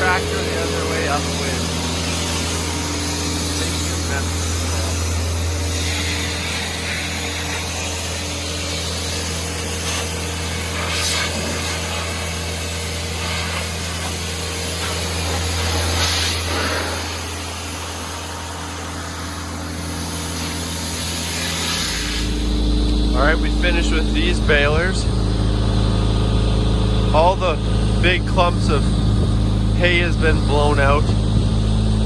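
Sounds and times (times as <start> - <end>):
air hose hissing blasts: 0.0 - 12.3, 13.1 - 24.0
air compressor droning: 0.0 - 32.0.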